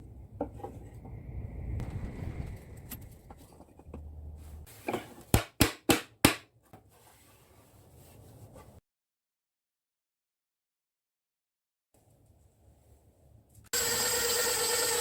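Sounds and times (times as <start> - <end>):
hammer striking wood: 5.3 - 6.5.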